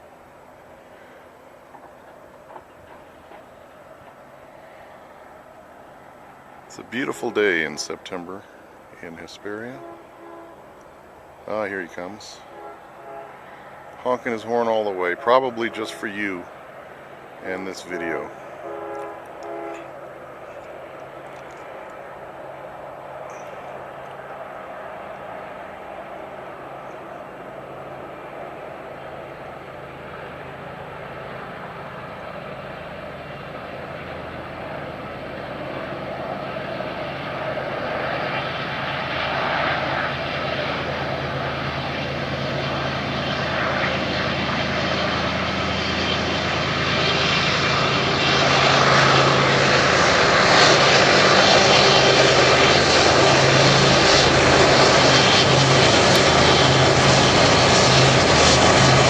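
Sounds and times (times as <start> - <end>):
locomotive engine drone: 0.0 - 59.0
train rolling on rails: 1.6 - 4.5.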